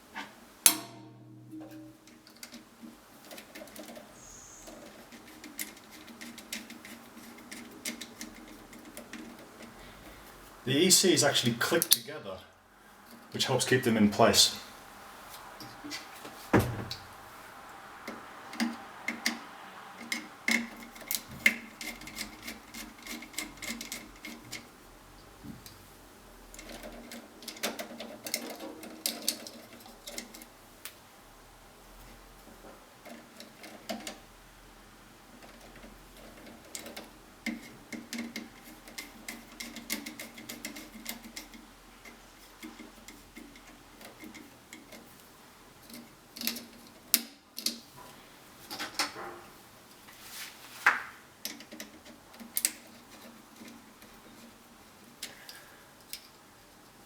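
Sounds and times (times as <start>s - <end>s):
wires being handled: 0.0s - 57.0s
screwdriver on terminal screws: 20.0s - 24.7s.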